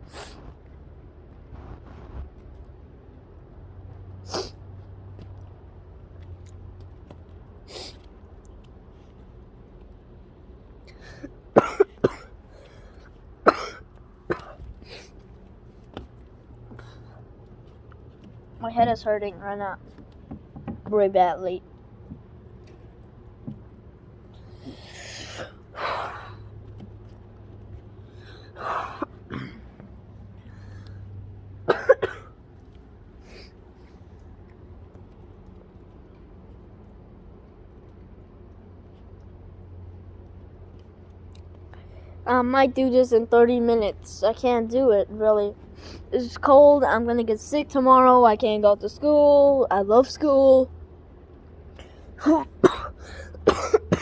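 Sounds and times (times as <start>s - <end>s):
person coughing: 11.6s - 12.3s, 13.5s - 14.6s, 28.6s - 29.8s, 31.7s - 32.4s, 52.2s - 54.0s
person gasping breaths: 52.9s - 53.4s.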